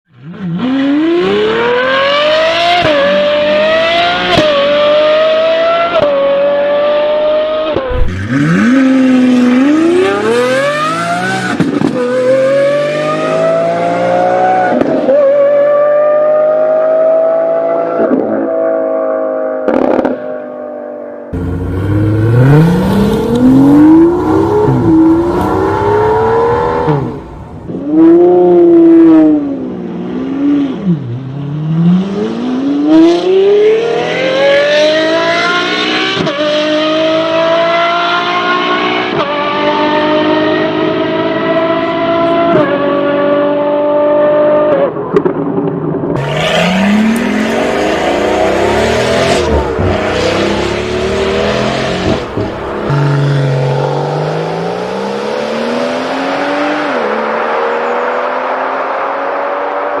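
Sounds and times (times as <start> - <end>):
sports car engine revving: 0.6 - 17.8, 21.4 - 30.5, 46.2 - 60.0.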